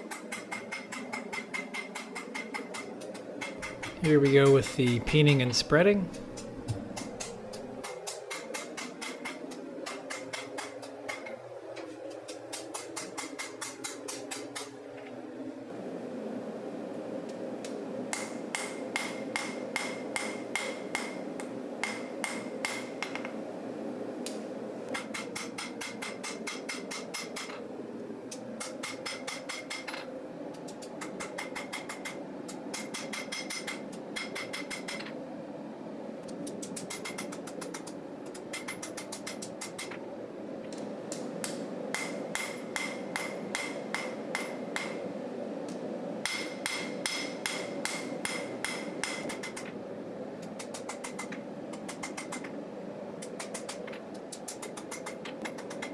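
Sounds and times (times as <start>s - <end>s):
hammer striking steel on anvil: 0.0s - 11.3s, 12.3s - 14.8s, 18.1s - 21.2s, 21.8s - 23.3s, 25.0s - 27.6s, 28.6s - 30.0s, 31.0s - 35.0s, 38.5s - 40.0s, 41.4s - 45.0s, 46.2s - 49.6s
steady rushing background: 3.4s - 8.0s.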